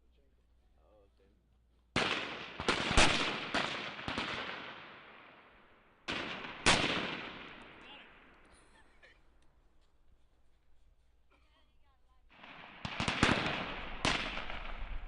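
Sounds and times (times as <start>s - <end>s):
rifle shots echoing: 2.0s - 8.5s, 12.3s - 15.0s.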